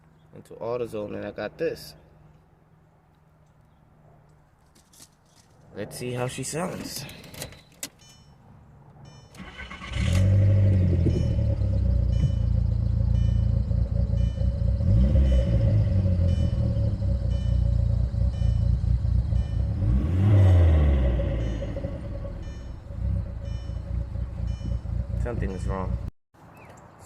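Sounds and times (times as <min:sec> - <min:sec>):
car engine starting and idling: 0:09.0 - 0:26.1
engine revving: 0:09.4 - 0:26.1.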